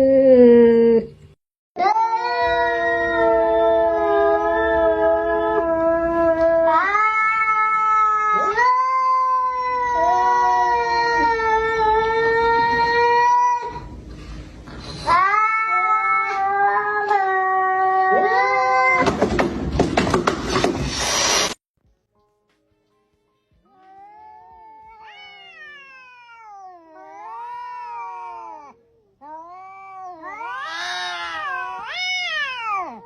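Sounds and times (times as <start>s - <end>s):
cat yowling: 23.7s - 33.0s.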